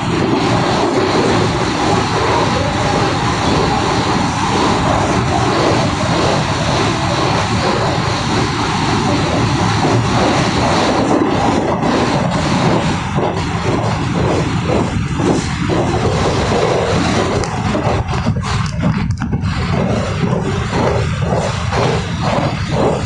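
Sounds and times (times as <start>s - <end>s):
electric train rushing: 0.0s - 23.0s.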